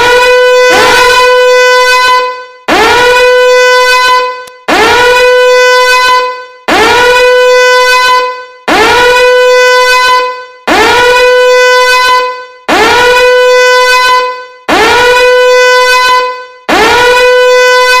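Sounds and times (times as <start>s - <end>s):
alarm horn swooping up: 0.0s - 5.0s.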